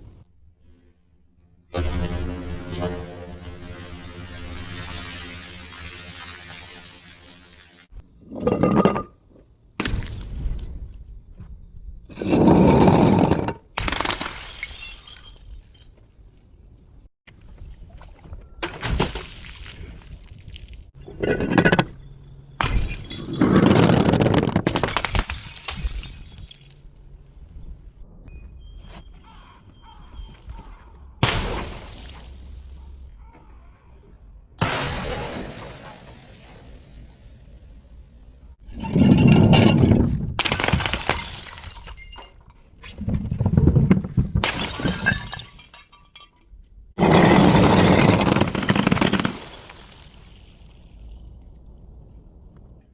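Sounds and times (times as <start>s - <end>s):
glass bottle breaking: 8.2s - 9.2s, 9.8s - 11.0s, 12.1s - 16.8s, 22.6s - 27.0s, 31.2s - 33.0s, 38.7s - 42.6s, 44.0s - 51.4s
glass pieces clinking: 8.2s - 9.2s, 22.6s - 26.9s, 38.8s - 42.6s, 44.5s - 50.6s.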